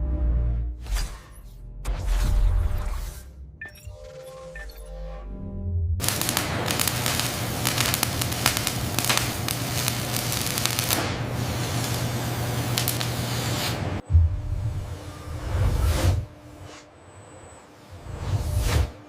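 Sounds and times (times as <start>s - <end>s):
low hum: 5.3s - 17.6s
steady crackling hiss: 6.0s - 13.6s.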